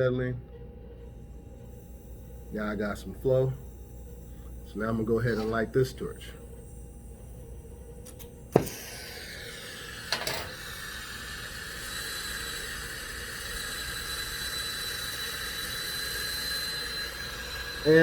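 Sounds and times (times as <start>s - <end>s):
torch flame hissing: 1.0s - 18.0s
torch ignition pop: 8.0s - 10.9s
faint high whistle: 11.8s - 18.0s.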